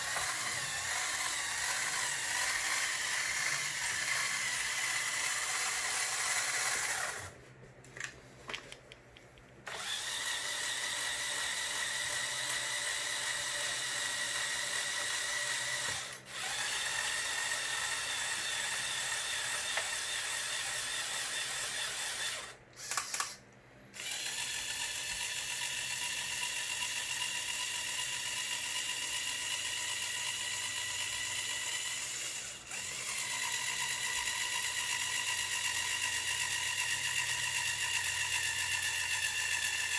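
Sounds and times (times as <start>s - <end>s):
small electric motors whirring: 0.0s - 7.4s, 9.7s - 23.4s, 24.0s - 39.9s.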